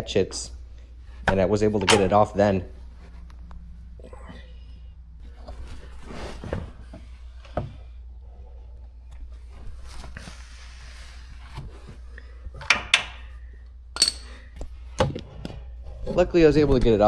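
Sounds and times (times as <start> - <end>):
steady low hum: 0.0 - 17.0
rustling and handling noise: 0.6 - 4.0, 5.1 - 12.7.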